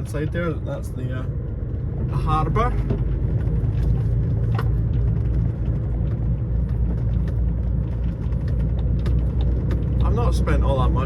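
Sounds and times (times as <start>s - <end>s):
road noise: 0.0s - 11.0s
light clicks and rattles: 2.8s - 10.6s.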